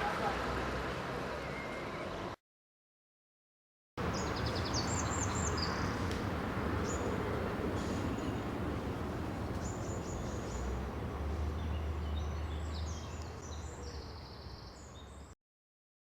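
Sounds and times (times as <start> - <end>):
steady low street rumble: 0.0 - 2.4, 4.0 - 15.3
small birds chirping: 4.0 - 15.4.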